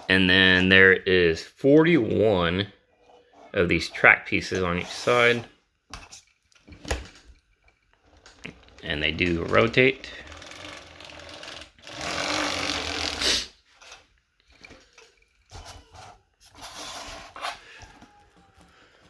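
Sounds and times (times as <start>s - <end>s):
plastic track links clattering: 6.4s - 15.6s.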